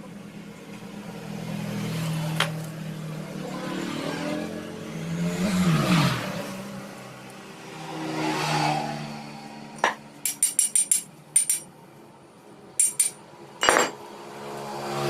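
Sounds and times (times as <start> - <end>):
passing vehicle engine: 0.2 - 10.2, 13.2 - 15.0
metal tools clinking: 9.8 - 11.7, 12.8 - 14.0.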